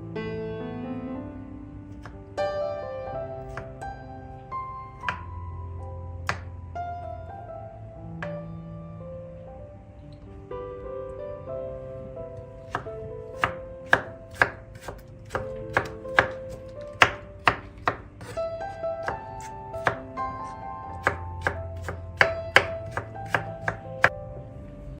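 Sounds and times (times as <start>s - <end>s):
soft background music: 0.0s - 25.0s
knife chopping on cutting board: 6.3s - 6.5s, 12.7s - 18.4s, 19.0s - 20.0s, 21.0s - 24.1s.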